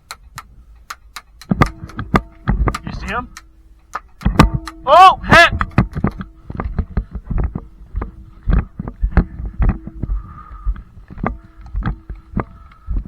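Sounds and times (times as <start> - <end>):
gear knocking: 0.0 - 6.7
faint steady hum: 0.0 - 13.0
heavy footsteps: 1.2 - 13.0.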